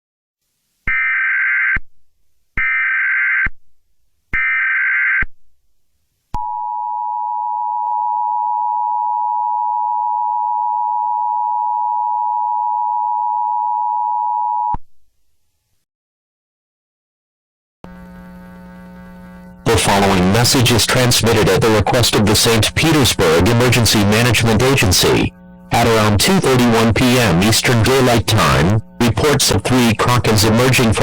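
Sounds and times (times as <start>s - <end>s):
data tone bursts: 19.7s - 31.0s.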